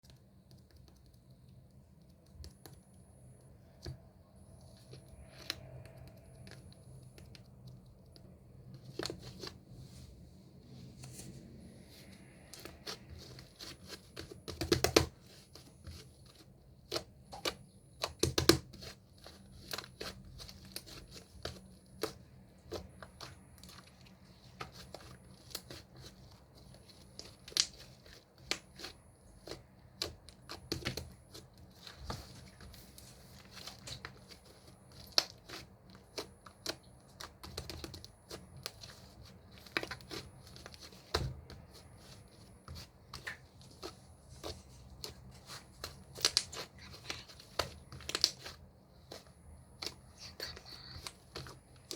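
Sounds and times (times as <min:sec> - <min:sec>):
crinkling and tearing handling: 0:10.8 - 0:51.9.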